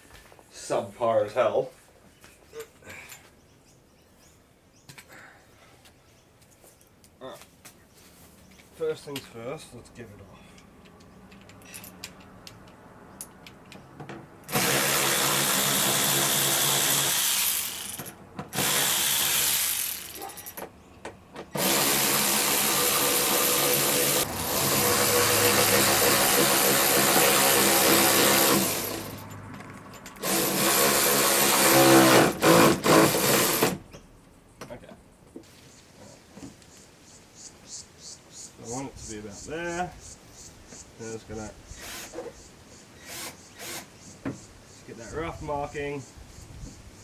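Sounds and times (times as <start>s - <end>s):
rotary tool grinding metal: 14.5s - 20.6s, 21.5s - 29.2s, 30.2s - 33.8s.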